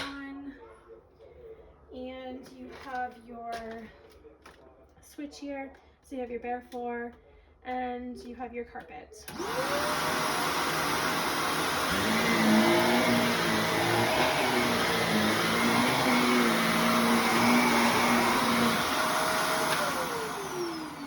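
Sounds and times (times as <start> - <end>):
vacuum cleaner running: 9.3 - 21.0.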